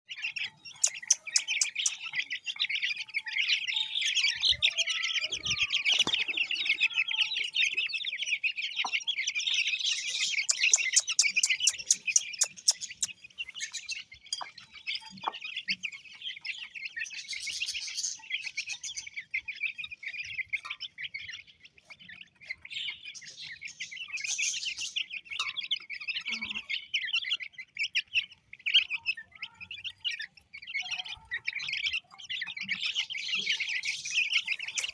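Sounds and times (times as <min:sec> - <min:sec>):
chicks peeping: 0:00.1 - 0:34.9.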